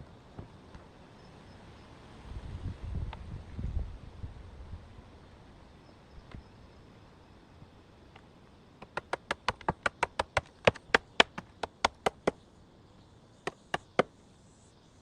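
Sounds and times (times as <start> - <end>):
sharp taps or knocks: 8.8 - 12.4, 13.5 - 14.1.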